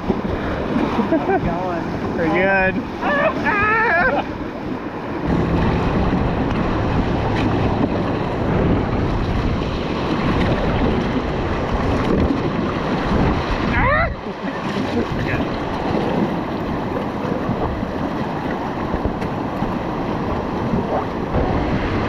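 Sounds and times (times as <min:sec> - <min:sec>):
river water rushing: 0:00.0 - 0:22.0
wind buffeting microphone: 0:00.0 - 0:22.0.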